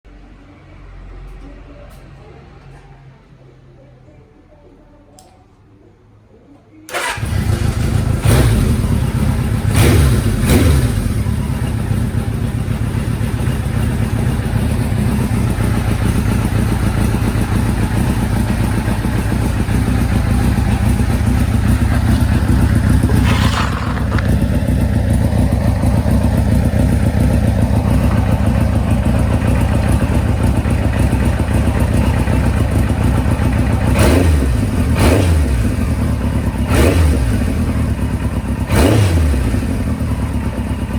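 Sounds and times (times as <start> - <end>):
motorcycle engine starting and idling: 6.9 - 40.9.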